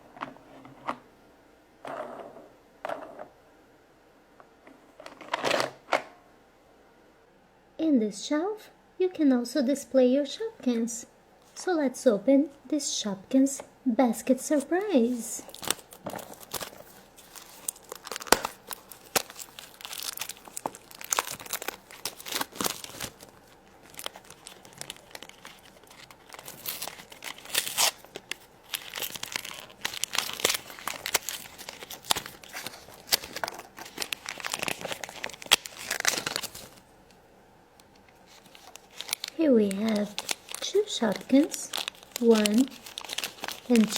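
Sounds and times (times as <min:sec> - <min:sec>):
plastic packaging crinkling and tearing: 0:14.6 - 0:36.8, 0:38.2 - 0:43.9.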